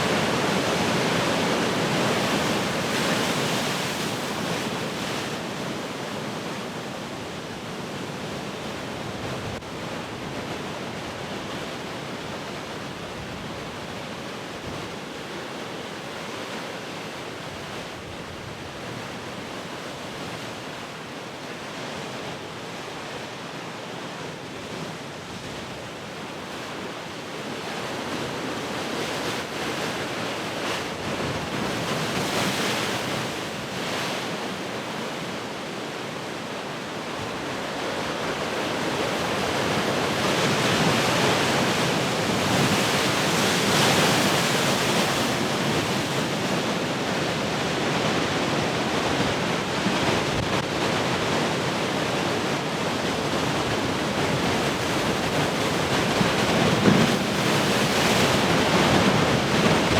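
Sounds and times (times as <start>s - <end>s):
wind: 0.0s - 59.9s
ocean waves breaking: 37.3s - 59.9s.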